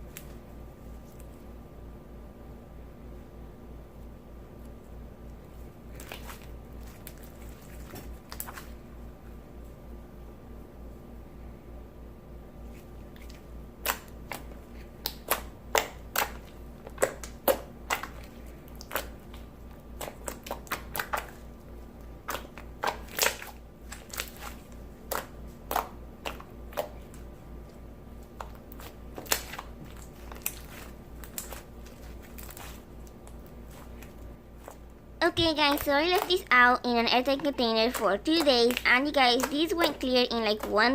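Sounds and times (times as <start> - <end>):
slime being squished by hand: 5.5 - 8.9, 12.7 - 40.9.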